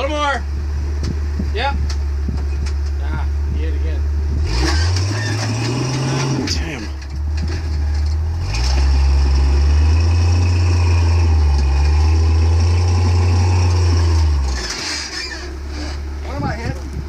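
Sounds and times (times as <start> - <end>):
off-road vehicle engine revving: 0.0 - 17.0.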